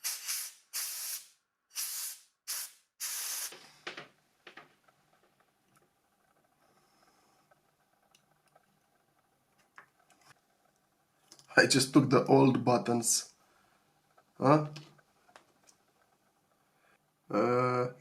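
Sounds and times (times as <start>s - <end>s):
blown air hissing: 0.0s - 4.0s.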